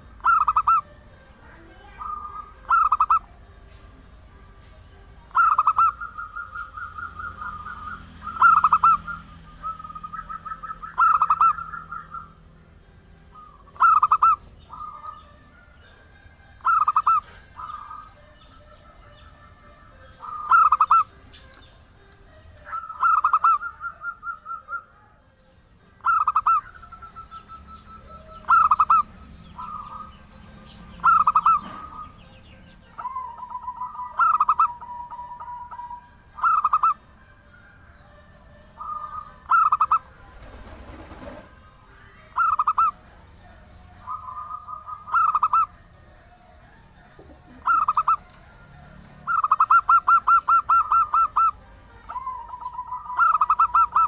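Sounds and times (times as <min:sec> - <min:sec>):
dove cooing: 0:00.0 - 0:01.0, 0:01.8 - 0:03.3, 0:05.3 - 0:12.4, 0:13.4 - 0:18.4, 0:19.0 - 0:21.2, 0:22.6 - 0:25.2, 0:26.0 - 0:30.2, 0:31.0 - 0:32.2, 0:32.9 - 0:37.1, 0:38.5 - 0:54.0.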